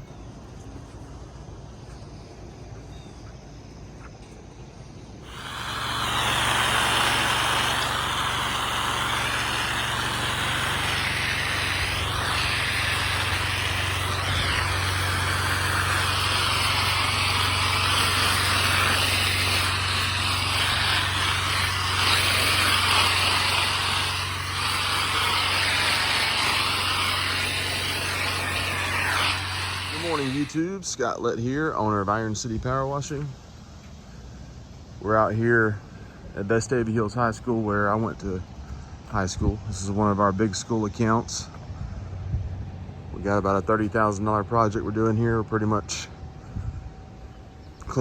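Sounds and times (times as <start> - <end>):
engine drone: 4.4 - 30.7
high-pressure water jet hissing: 5.2 - 30.7.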